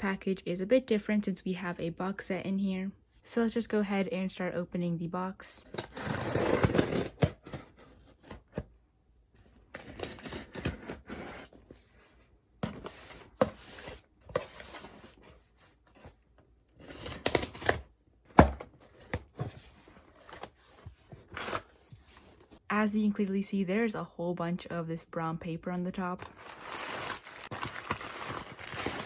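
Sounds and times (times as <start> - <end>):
tape tearing: 5.7 - 8.6, 16.7 - 19.5, 26.2 - 29.0
packing paper rustling: 26.2 - 29.0.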